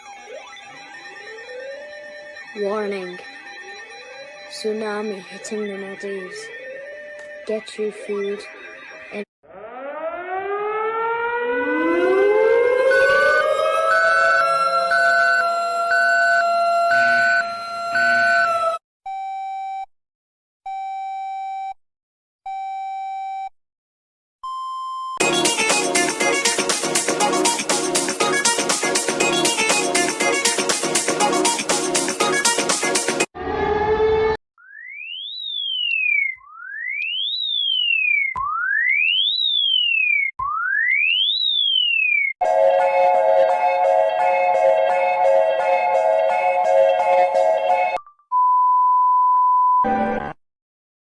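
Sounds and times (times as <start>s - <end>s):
long electronic beeps: 0.0s - 7.2s
two-tone alarm: 0.0s - 19.9s, 34.6s - 48.0s
electronic dance music: 25.2s - 33.3s, 43.4s - 48.0s.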